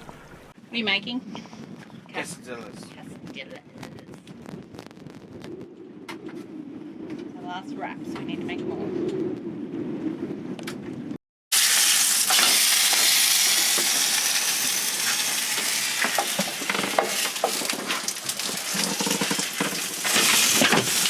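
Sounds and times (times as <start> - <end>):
food sizzling in a frying pan: 11.5 - 21.0.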